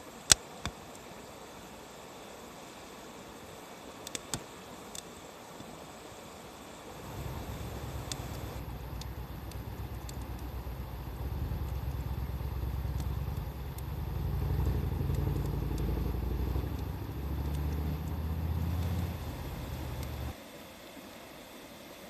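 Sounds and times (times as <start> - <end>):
wood fire crackling: 4.0 - 5.1, 6.9 - 20.4
motor vehicle engine rumble: 6.9 - 20.4.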